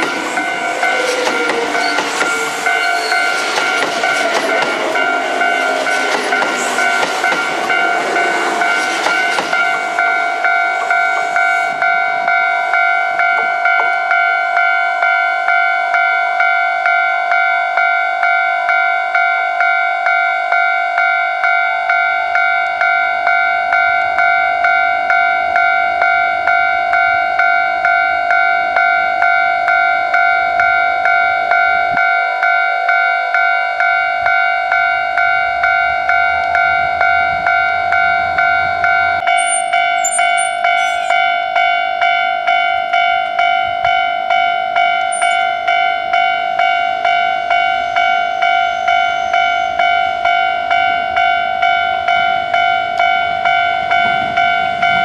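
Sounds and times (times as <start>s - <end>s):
train wheels clattering over rail joints: 0.0s - 11.9s
level crossing warning bell: 0.0s - 55.0s.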